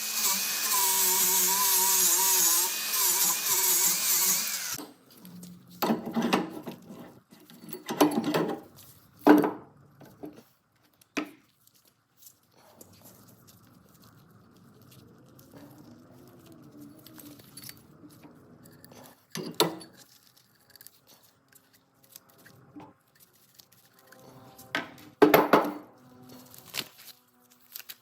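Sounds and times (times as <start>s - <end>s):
metal tools clinking: 6.1s - 8.7s.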